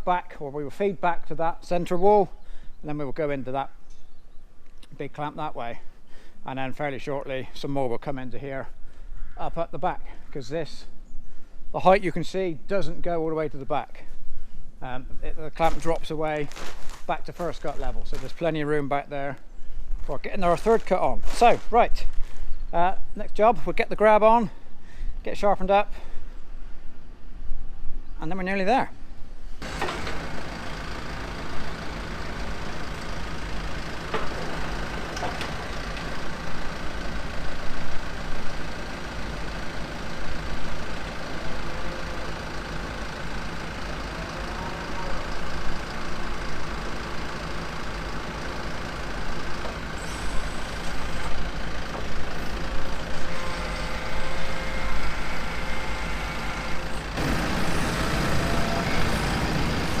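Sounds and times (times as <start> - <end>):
knocks and clanks: 29.6 - 31.4, 32.9 - 36.5
loader engine running: 29.6 - 60.0.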